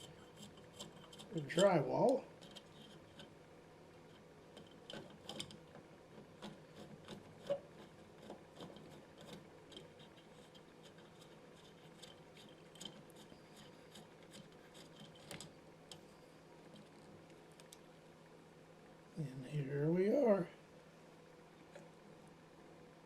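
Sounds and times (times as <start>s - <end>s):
screwdriver scraping and clicking: 0.0s - 3.3s, 4.1s - 16.1s.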